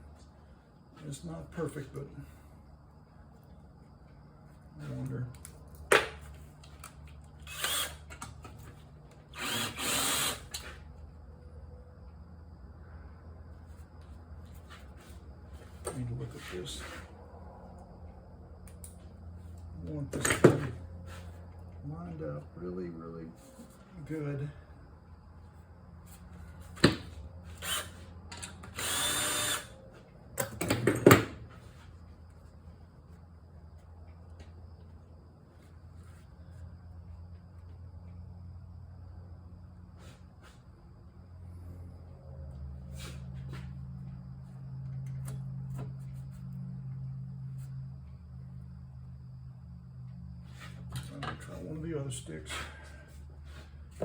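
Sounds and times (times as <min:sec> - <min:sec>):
power drill running: 0:07.4 - 0:08.2, 0:09.3 - 0:10.7, 0:27.6 - 0:29.8.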